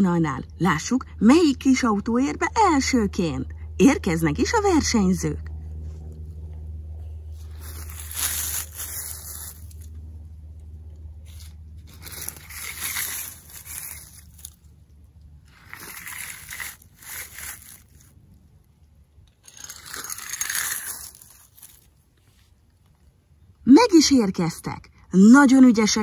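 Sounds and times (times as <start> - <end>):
toy cars rolling on grit: 11.3 - 14.6, 15.4 - 18.2, 19.2 - 22.0.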